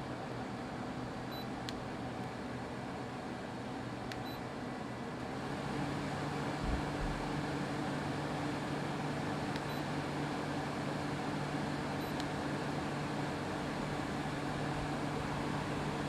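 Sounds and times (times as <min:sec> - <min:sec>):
air conditioner running: 0:00.0 - 0:16.0
faint beeps with clicks: 0:01.3 - 0:01.5, 0:04.1 - 0:04.4, 0:09.6 - 0:09.9, 0:12.0 - 0:12.3.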